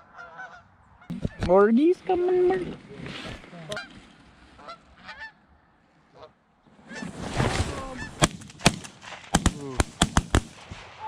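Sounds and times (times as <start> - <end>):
geese honking: 0.0 - 1.7, 3.7 - 7.2
sharp cracks: 7.3 - 11.0.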